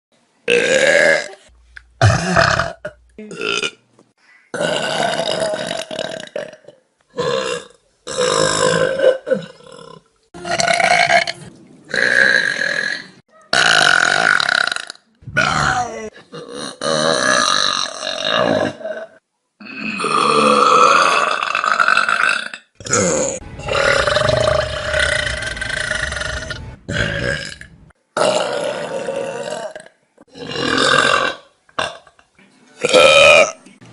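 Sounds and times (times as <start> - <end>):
people burping: 0.5 - 3.8, 4.5 - 11.3, 11.9 - 23.4, 28.2 - 32.2, 32.8 - 33.7.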